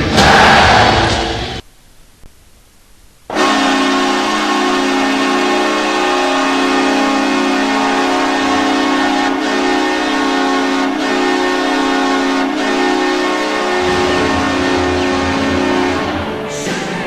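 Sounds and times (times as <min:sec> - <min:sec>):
goal horn blast: 0:03.3 - 0:16.6.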